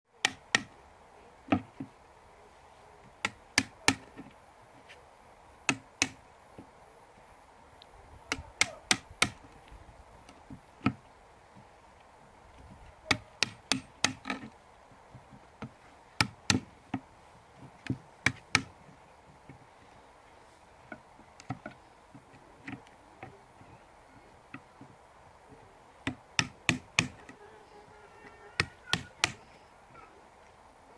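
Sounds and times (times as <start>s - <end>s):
hand tool knocking on wood: 17.8s - 18.7s, 26.1s - 27.2s, 28.6s - 29.4s.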